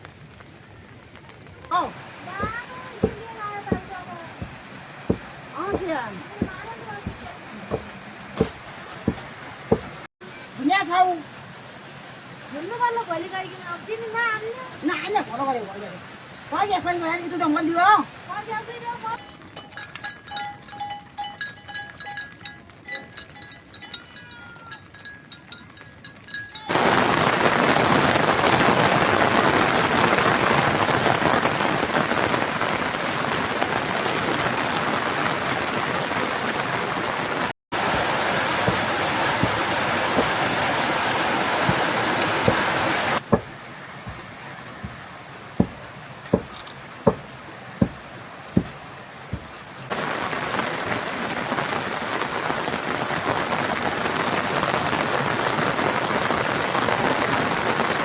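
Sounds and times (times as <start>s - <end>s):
heavy rain falling: 0.0s - 21.2s, 21.8s - 58.0s
loud water drips: 37.8s - 51.2s.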